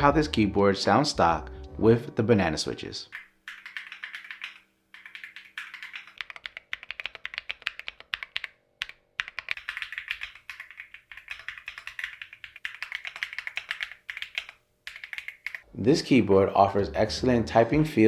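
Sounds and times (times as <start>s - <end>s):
mechanical keyboard typing: 3.2s - 15.6s.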